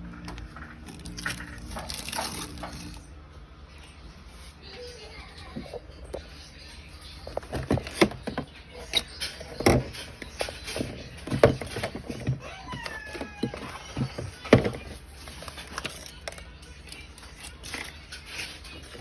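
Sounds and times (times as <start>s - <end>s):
drinks and snacks knocking and clattering: 7.3s - 15.0s.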